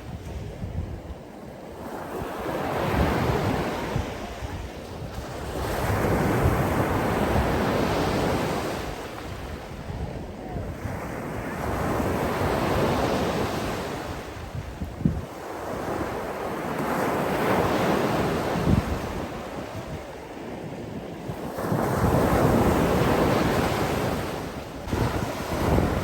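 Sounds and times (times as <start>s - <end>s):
sea waves breaking: 0.0s - 26.0s.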